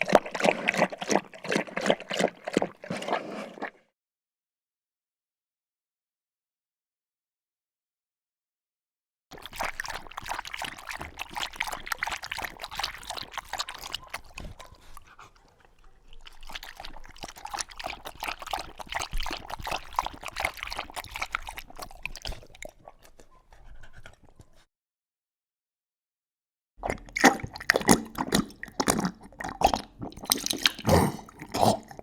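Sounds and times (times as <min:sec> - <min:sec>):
dog lapping water: 0:00.0 - 0:03.8, 0:09.3 - 0:24.4, 0:26.8 - 0:32.0.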